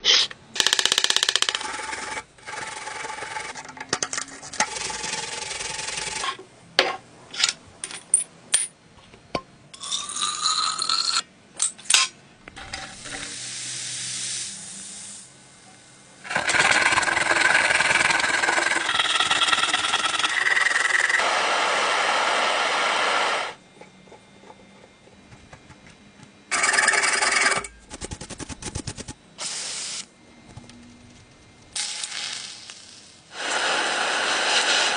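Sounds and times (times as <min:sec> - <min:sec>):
power tools running: 0:16.2 - 0:23.6.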